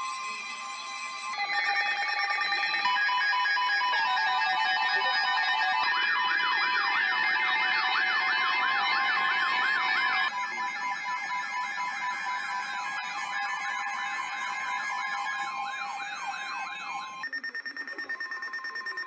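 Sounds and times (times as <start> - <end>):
warbling siren: 0.0 - 17.2
pulsing alarm tones: 0.0 - 19.0
electronic beeping tones: 7.3 - 19.0.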